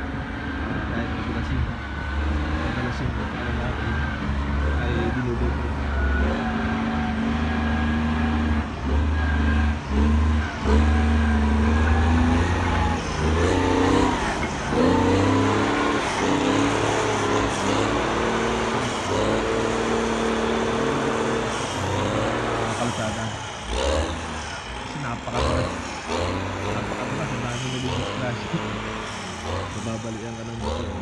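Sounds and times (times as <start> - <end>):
heavy machine engine droning: 0.0 - 31.0.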